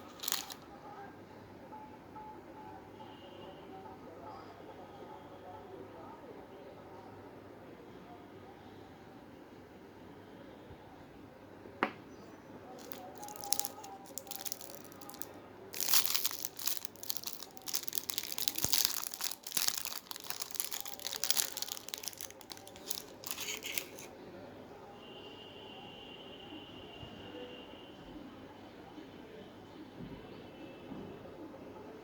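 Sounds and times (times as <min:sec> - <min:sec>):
snack packet crinkling: 0:00.0 - 0:00.6, 0:12.8 - 0:24.1.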